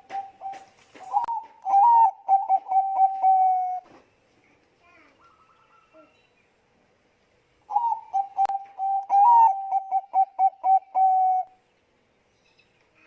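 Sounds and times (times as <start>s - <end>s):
dove cooing: 0.0s - 4.0s, 7.7s - 11.6s.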